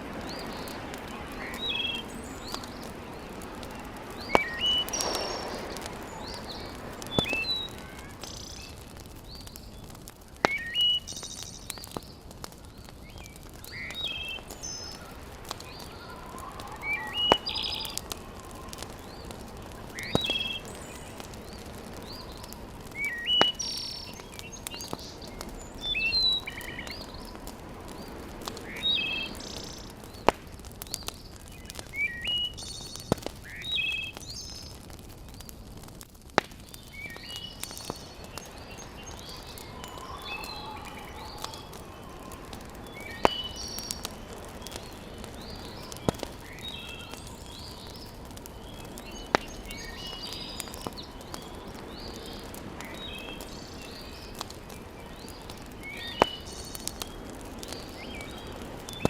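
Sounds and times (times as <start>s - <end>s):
steady hiss: 0.0s - 11.7s
wood fire crackling: 0.0s - 59.0s
bird chirping: 0.4s - 9.8s, 10.4s - 27.4s, 36.7s - 54.4s.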